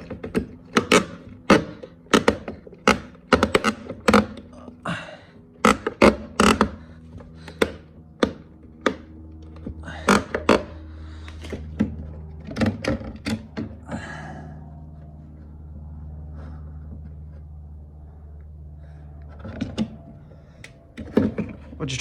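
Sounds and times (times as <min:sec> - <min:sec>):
plastic parts clicking and knocking: 0:00.0 - 0:04.5, 0:11.4 - 0:13.8
steady low hum: 0:00.0 - 0:22.0.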